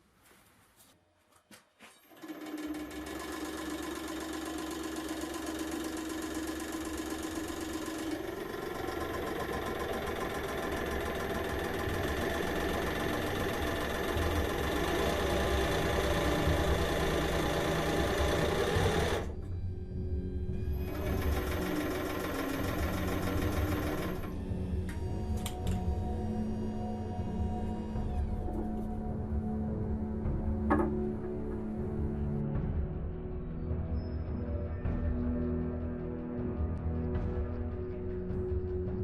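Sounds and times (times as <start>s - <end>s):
hydraulic press pump motor: 2.0s - 19.5s, 20.8s - 25.8s.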